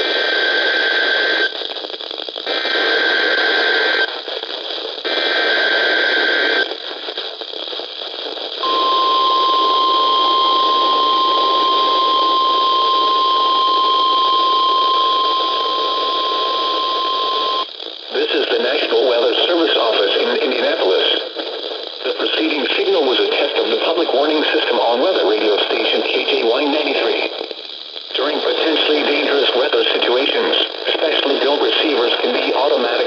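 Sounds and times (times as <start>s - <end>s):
radio static: 0.0s - 33.0s
steady alarm tone: 8.6s - 17.6s
data bursts: 8.6s - 17.7s.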